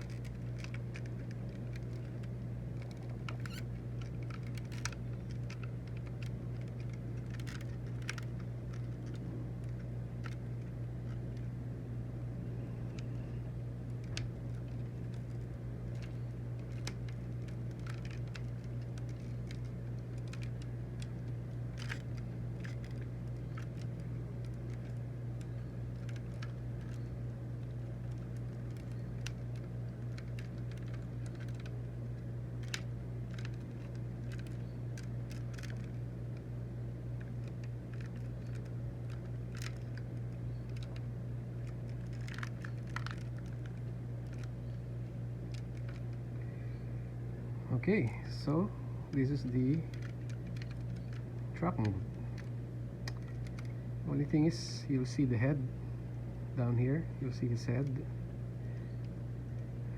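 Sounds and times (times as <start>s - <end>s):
plastic toy parts clicking: 0.0s - 11.4s, 14.0s - 36.4s, 37.2s - 44.6s, 49.1s - 53.7s
low hum: 0.0s - 59.9s.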